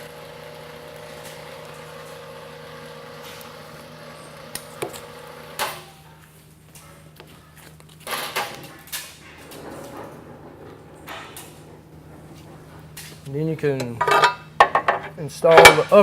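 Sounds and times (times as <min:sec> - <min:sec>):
low machine hum: 0:08.6 - 0:16.0
heavy steel parts clanking: 0:09.0 - 0:16.0.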